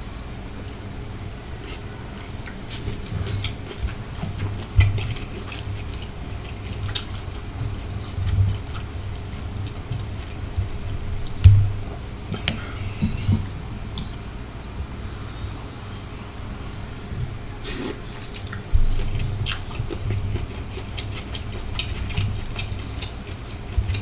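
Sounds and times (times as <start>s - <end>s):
close chewing with mouth clicks: 1.6s - 14.2s, 17.5s - 24.0s.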